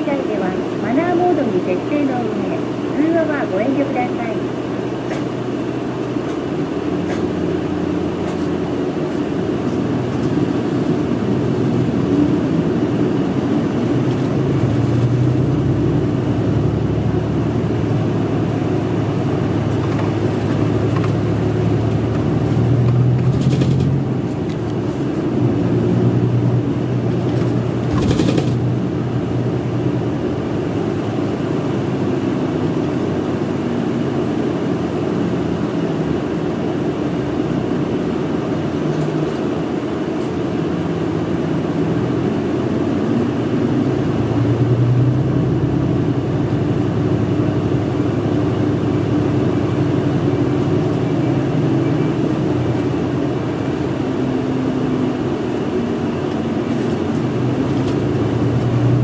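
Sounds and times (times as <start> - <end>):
bus diesel engine running: 0.0 - 59.0.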